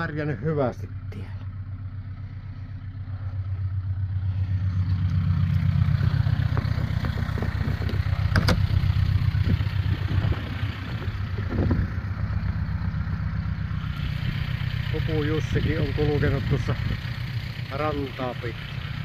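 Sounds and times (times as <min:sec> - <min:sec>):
small engine running: 0:01.9 - 0:19.0.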